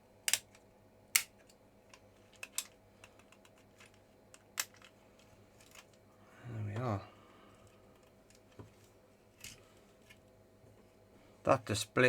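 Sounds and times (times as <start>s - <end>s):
plastic clips clicking and snapping: 0.3s - 0.6s, 1.2s - 4.9s.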